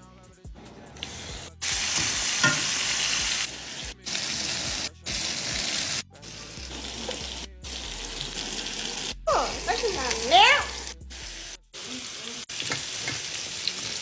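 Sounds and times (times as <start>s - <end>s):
chicken sizzling in a pan: 1.6s - 6.0s, 11.8s - 14.0s.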